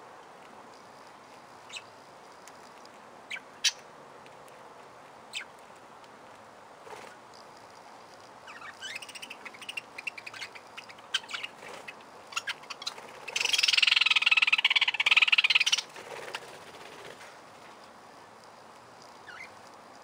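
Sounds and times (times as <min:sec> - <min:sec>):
rapid rattling bird chatter: 0:00.8 - 0:03.9, 0:06.9 - 0:17.4, 0:19.0 - 0:19.6
budgerigars chirping: 0:03.3 - 0:03.8, 0:08.4 - 0:16.5.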